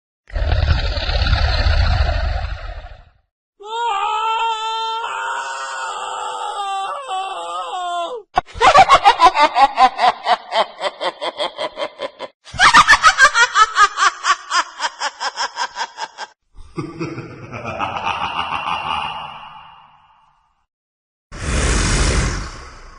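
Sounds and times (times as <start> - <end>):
evil laughter: 8.5 - 20.2.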